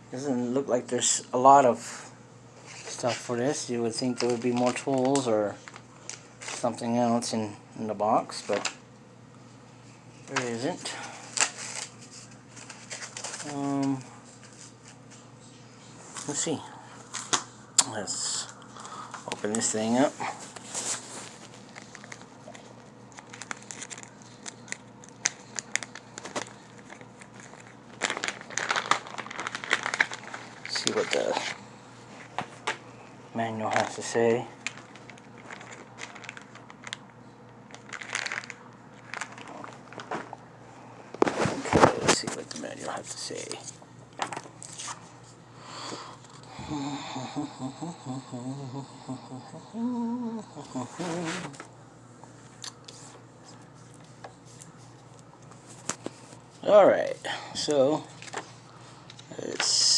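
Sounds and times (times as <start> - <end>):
plastic packaging crinkling: 4.0 - 6.8, 10.1 - 15.2, 16.1 - 32.8, 33.6 - 45.2, 50.6 - 51.7, 52.3 - 59.9
man humming: 46.5 - 51.6.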